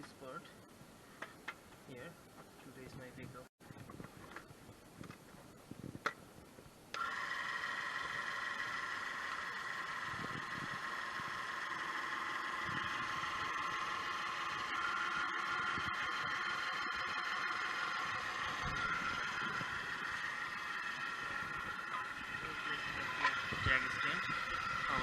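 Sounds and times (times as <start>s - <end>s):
electric car jack motor whining: 6.9s - 25.0s.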